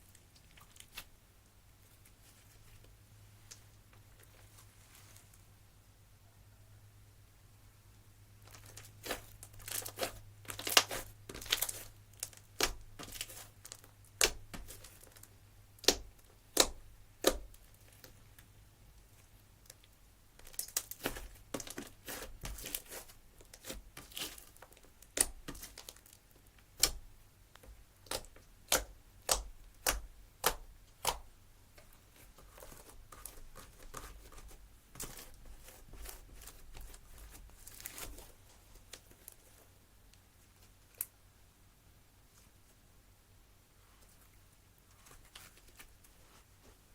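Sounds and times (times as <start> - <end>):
slime popping and crackling: 8.5 - 17.6, 20.4 - 27.1.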